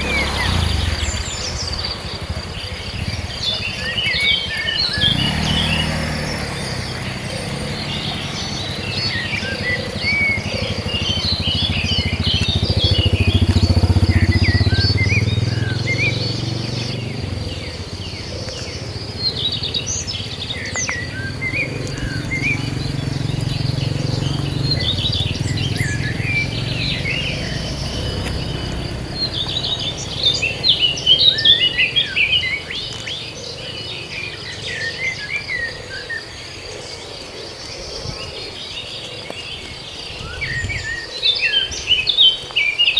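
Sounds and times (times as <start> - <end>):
high insect drone: 0.0 - 38.6
birds chirping: 0.0 - 42.9.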